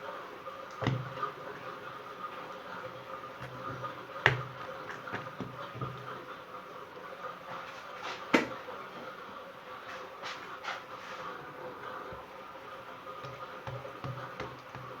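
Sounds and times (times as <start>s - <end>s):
cookware knocks: 3.4s - 6.0s, 8.4s - 8.6s.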